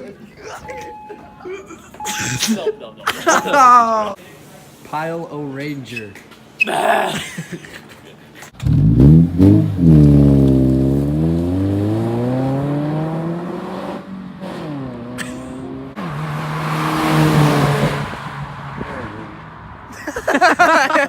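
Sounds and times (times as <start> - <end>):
car engine revving: 8.6 - 19.8.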